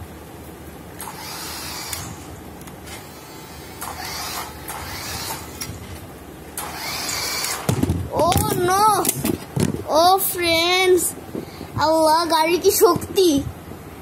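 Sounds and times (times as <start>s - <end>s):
toy car electric motor whirring: 1.0s - 2.3s, 2.9s - 5.8s, 6.6s - 9.2s.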